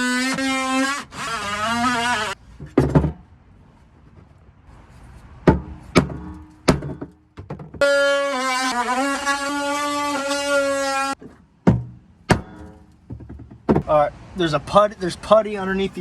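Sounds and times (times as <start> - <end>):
power cutting tool buzzing: 0.0 - 2.4, 7.8 - 11.2
sharp knocks: 5.4 - 7.9, 11.2 - 14.0.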